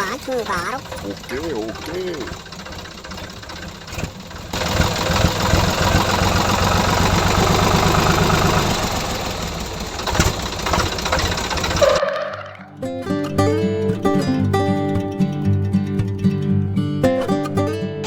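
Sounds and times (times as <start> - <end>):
strummed guitar music: 0.0 - 3.2, 12.4 - 18.0
small engine running: 0.0 - 12.6.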